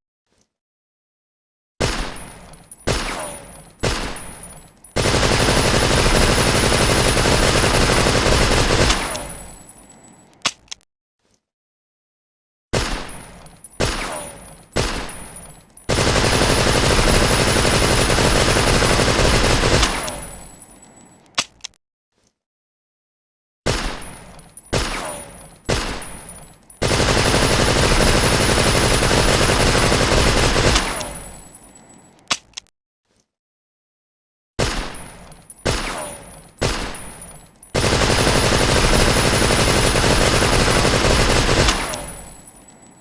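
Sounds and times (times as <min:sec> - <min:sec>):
submachine gun automatic fire: 0:05.0 - 0:09.4, 0:15.9 - 0:20.4, 0:26.8 - 0:31.4, 0:37.8 - 0:42.4.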